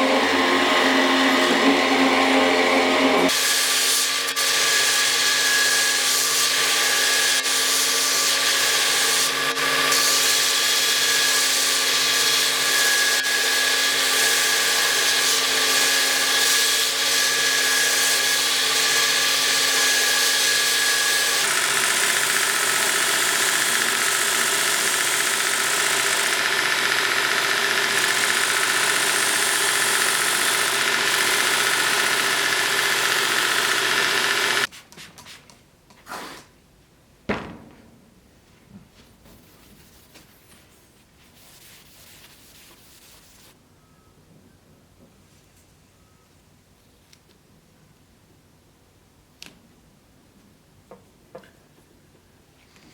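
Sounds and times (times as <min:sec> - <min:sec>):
electric grinder grinding metal: 0:00.0 - 0:34.7.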